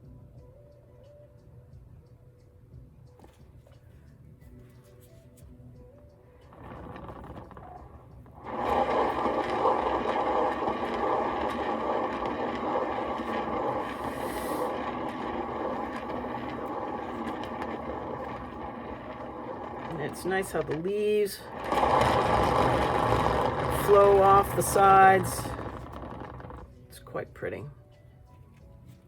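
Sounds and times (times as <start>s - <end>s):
mini leaf blower motor whining: 6.4s - 26.7s.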